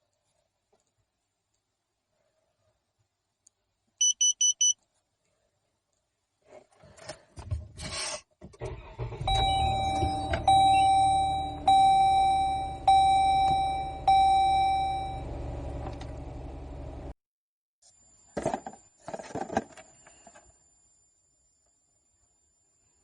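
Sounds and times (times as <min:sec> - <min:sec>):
dashboard warning chime: 0:04.0 - 0:04.8, 0:08.9 - 0:16.3
low steady rumble: 0:09.1 - 0:17.2.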